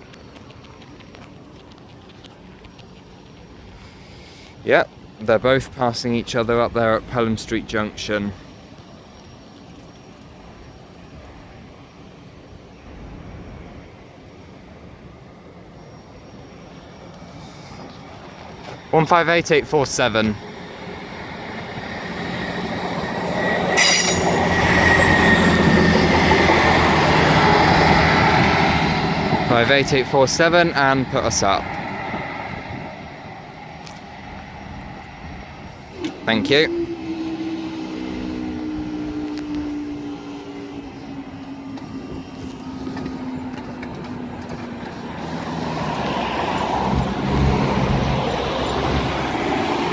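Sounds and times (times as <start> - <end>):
road traffic: 0.0 - 49.9
train engine drone: 0.0 - 49.9
train wheels squealing: 8.0 - 49.9
thin high ring: 22.4 - 25.6.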